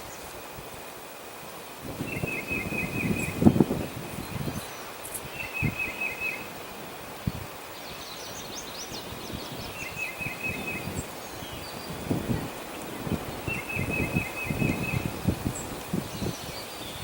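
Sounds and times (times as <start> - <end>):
wind noise: 0.0 - 17.0
songbird singing: 2.0 - 17.0
bird chirping: 2.1 - 6.5, 7.8 - 12.5, 13.3 - 17.0.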